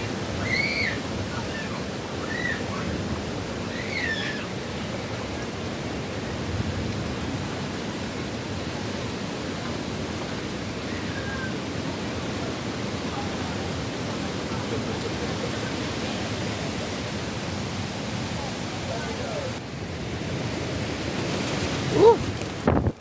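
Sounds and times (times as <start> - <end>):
storm wind and rain roaring: 0.0 - 23.0.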